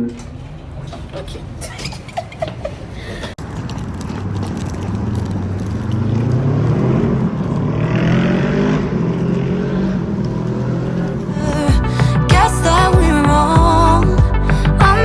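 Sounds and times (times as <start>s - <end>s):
continuous low rumble: 0.0s - 15.0s
vehicle motor pulling away: 3.4s - 14.8s.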